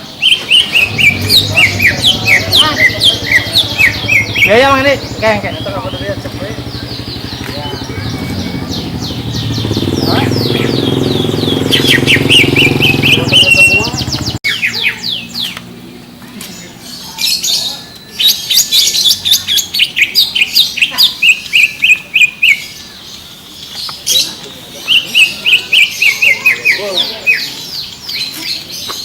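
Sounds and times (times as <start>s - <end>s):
bird chirping song: 0.0s - 29.0s
low engine hum: 0.8s - 14.4s.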